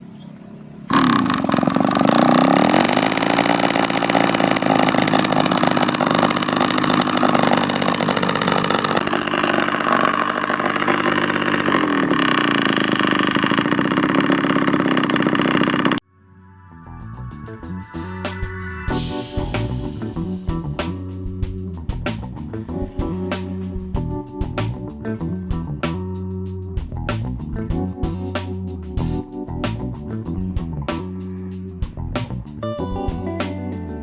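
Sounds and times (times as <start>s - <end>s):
miniature two-stroke engine running: 0.6s - 16.0s.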